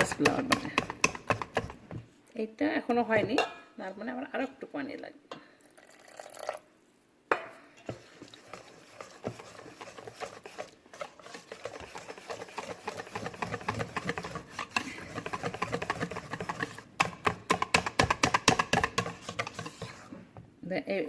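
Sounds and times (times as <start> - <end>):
whisk beating batter: 0.0 - 2.0, 7.8 - 20.2.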